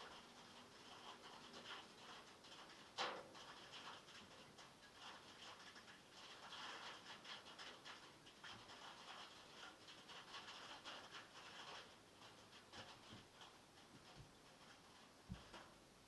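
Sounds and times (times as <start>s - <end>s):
heavy rain on metal: 0.0s - 16.0s.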